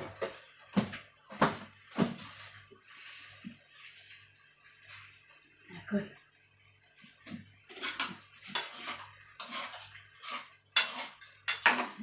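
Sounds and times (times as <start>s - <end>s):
utensil scraping in a pan: 7.0s - 12.0s.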